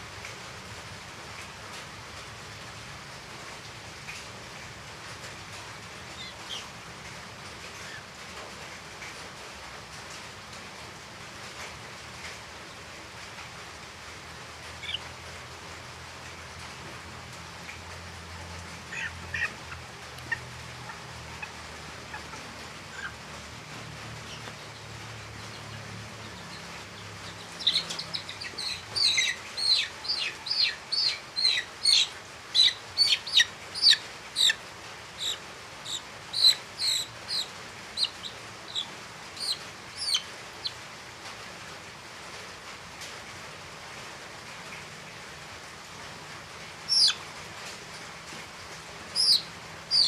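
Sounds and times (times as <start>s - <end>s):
steady hiss: 0.0s - 50.0s
chicks peeping: 18.8s - 40.8s, 46.9s - 47.2s, 49.1s - 50.0s.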